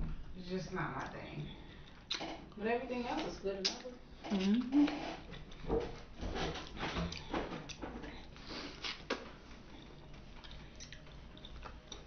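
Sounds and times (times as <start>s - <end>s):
wet chewing and mouth clicks: 1.0s - 2.6s, 6.6s - 12.0s.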